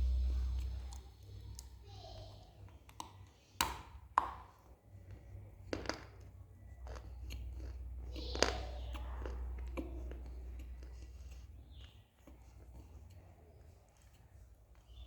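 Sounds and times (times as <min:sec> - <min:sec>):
soft chewing clicks: 0:00.0 - 0:15.0
clay crunching in mouth: 0:05.1 - 0:12.7.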